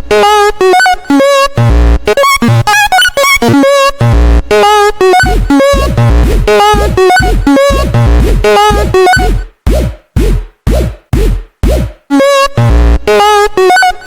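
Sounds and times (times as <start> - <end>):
choppy synth notes: 0.0 - 14.0
heavy bass hits: 5.2 - 13.0.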